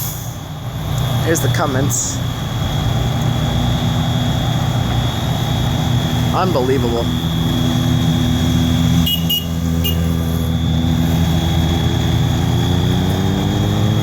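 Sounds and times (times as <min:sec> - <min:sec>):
diesel engine idling: 0:00.0 - 0:14.0
fire alarm high tone: 0:08.9 - 0:10.9
vehicle horn short beeps: 0:09.0 - 0:10.1.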